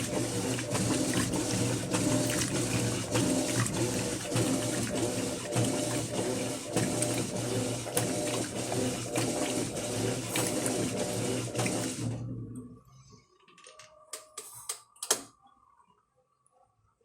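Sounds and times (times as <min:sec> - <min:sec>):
washing machine agitating: 0:00.0 - 0:12.5.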